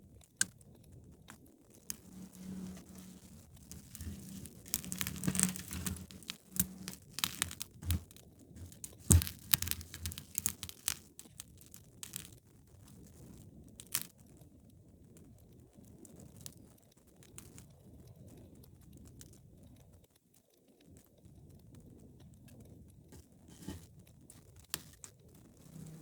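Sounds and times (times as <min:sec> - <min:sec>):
wood fire crackling and popping: 0:01.9 - 0:12.4.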